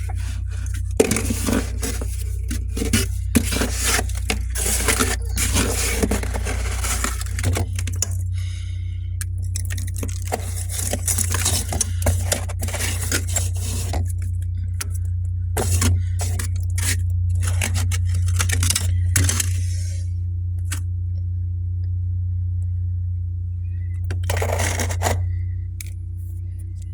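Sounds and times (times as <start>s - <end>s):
frost being scraped and crunched: 0.0s - 15.0s, 15.6s - 20.8s, 24.1s - 25.3s
steady low hum: 0.0s - 26.9s.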